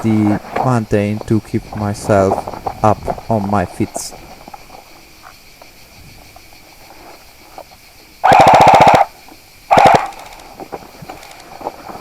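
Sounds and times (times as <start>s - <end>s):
airsoft rifle full-auto bursts: 8.2s - 10.4s.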